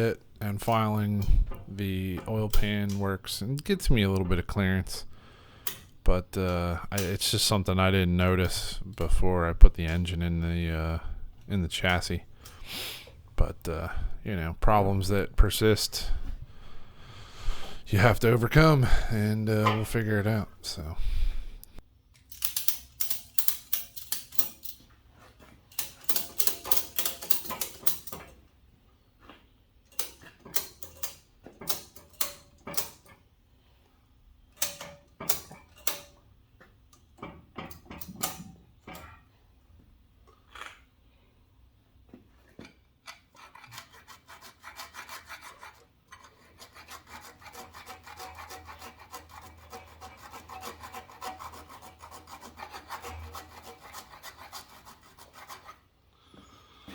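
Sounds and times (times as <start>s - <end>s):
hand file rasping on steel: 43.1s - 55.9s.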